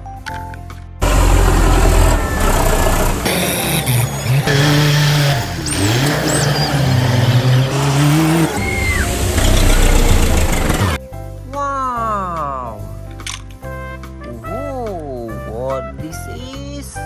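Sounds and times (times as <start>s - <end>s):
vehicle engine revving: 1.0s - 11.0s
short high squeaks: 1.8s - 11.0s.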